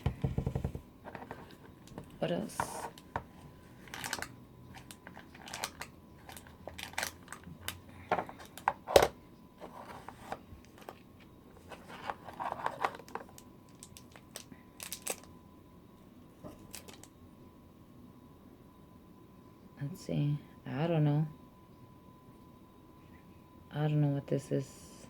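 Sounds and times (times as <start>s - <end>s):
toy packaging rustling and crinkling: 1.1s - 15.3s, 16.5s - 17.1s.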